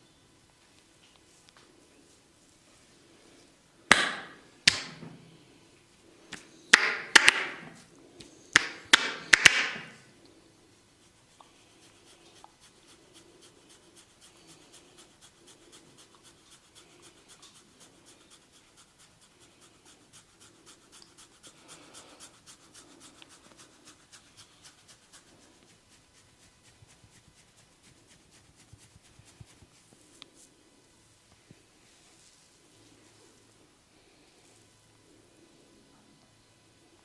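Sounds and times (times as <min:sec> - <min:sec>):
fingers scratching through hair: 0:10.9 - 0:30.5.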